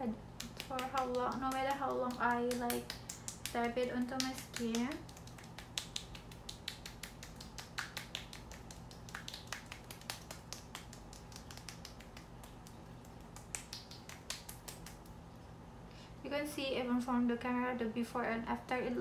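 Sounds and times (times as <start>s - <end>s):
fingertips patting sticky skin: 0.4s - 15.2s.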